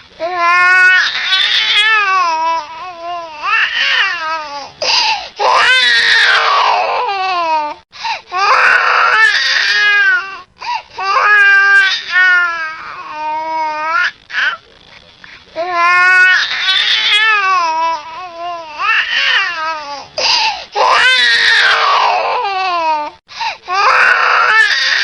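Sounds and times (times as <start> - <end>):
infant crying: 0.2 - 14.6, 15.6 - 23.1, 23.7 - 25.0
gasps for breath: 4.8 - 5.4, 8.0 - 8.3, 20.2 - 20.7, 23.3 - 23.6.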